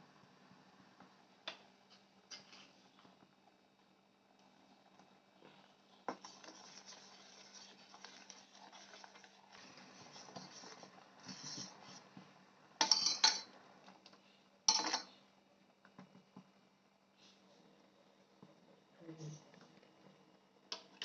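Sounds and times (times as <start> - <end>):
soft scraping and rustling: 1.8 - 3.2, 5.4 - 12.4.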